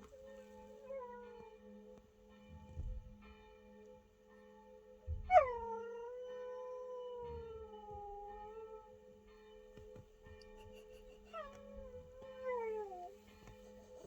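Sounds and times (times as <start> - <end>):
church bells ringing: 0.0 - 5.6, 11.0 - 14.0
dog howling: 5.3 - 8.9, 11.4 - 13.2.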